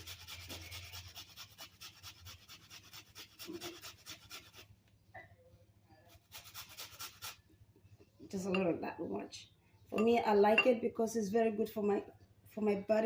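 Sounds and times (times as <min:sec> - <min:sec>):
onion being grated by hand: 0:00.0 - 0:04.7, 0:06.1 - 0:07.4.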